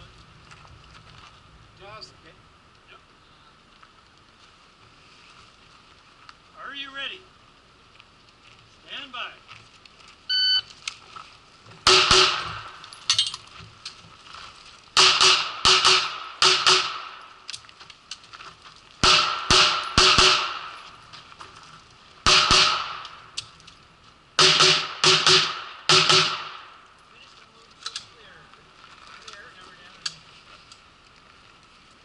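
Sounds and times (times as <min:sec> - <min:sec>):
handgun shots echoing: 0:11.8 - 0:12.8, 0:15.0 - 0:17.2, 0:19.0 - 0:20.8, 0:22.3 - 0:23.2, 0:24.4 - 0:26.7.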